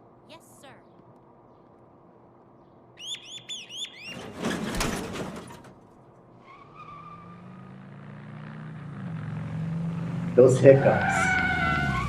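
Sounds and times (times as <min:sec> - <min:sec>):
quick rising chirps: 0:03.0 - 0:04.8
engine-like hum: 0:03.9 - 0:12.0.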